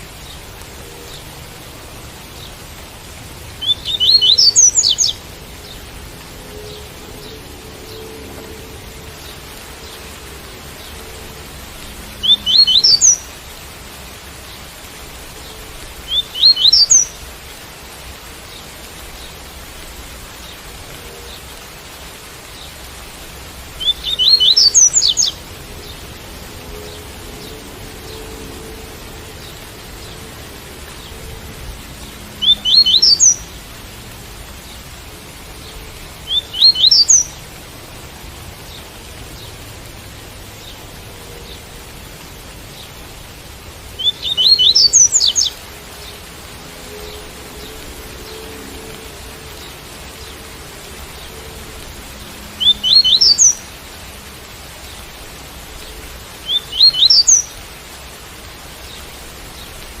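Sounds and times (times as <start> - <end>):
rain hissing: 0.0 - 60.0
bird singing high notes: 52.5 - 53.6.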